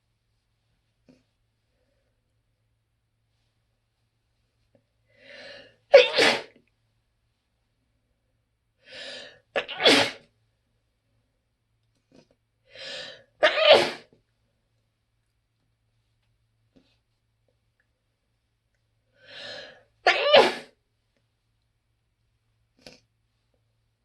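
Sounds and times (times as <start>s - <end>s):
woman sneezing: 5.9s - 6.6s, 9.6s - 10.2s, 13.4s - 14.1s, 20.1s - 20.7s.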